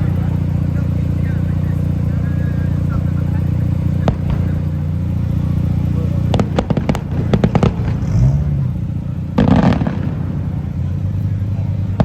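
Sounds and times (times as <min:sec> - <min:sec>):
car engines idling: 0:00.0 - 0:12.0
firework cracks: 0:04.0 - 0:11.0.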